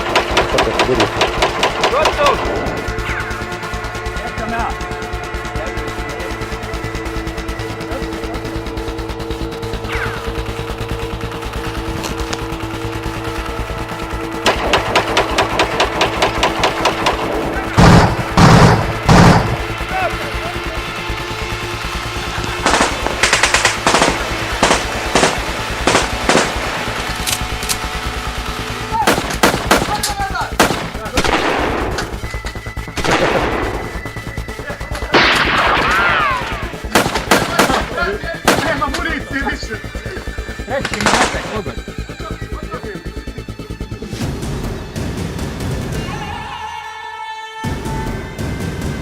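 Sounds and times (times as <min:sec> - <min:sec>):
background music: 0:00.0 - 0:49.0
gunfire-like bangs with hissing tails: 0:14.4 - 0:19.8, 0:22.2 - 0:27.2, 0:29.1 - 0:32.0, 0:36.8 - 0:39.1
airsoft gun firing: 0:14.5 - 0:19.8, 0:22.5 - 0:28.0, 0:28.9 - 0:32.1, 0:35.1 - 0:38.9.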